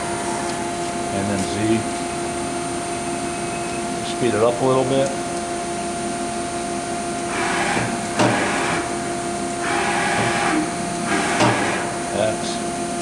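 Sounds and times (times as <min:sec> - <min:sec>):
machine hum: 0:00.0 - 0:13.0
axis drive surge: 0:07.3 - 0:12.4.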